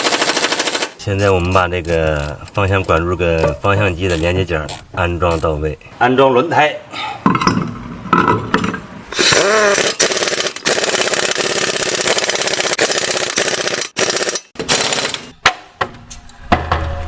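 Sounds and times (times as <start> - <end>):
impact wrench rattling: 7.4 - 15.3.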